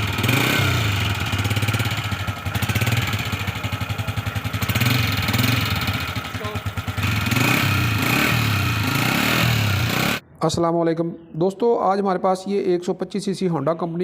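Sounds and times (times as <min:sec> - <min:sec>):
motorcycle engine revving: 0:00.0 - 0:10.2.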